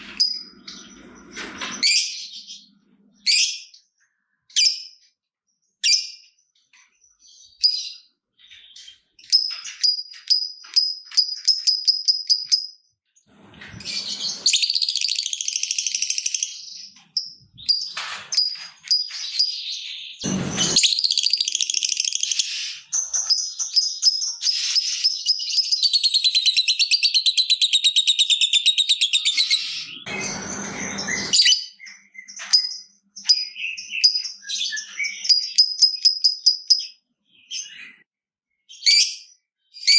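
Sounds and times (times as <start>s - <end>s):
short noisy bursts: 20.2s - 21.0s, 30.1s - 31.5s.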